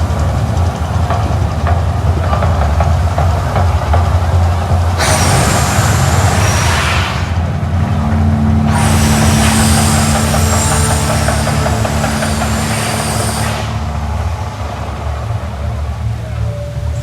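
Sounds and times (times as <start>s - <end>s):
deep continuous rumble: 0.0s - 17.0s
steady low tone: 4.6s - 17.0s
loud hiss: 4.9s - 7.8s, 8.6s - 15.5s.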